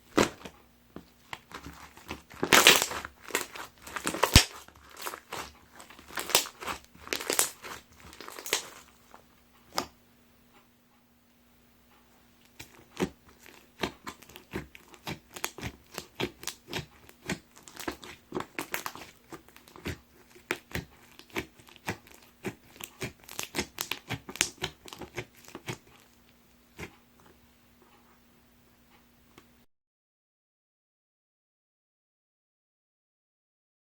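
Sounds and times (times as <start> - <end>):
slime crackling and popping: 1.2 - 9.2, 12.4 - 26.0.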